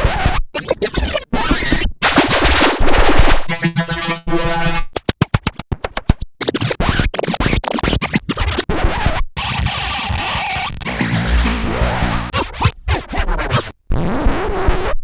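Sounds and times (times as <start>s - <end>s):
record scratch effects: 2.0s - 3.9s, 10.8s - 12.4s.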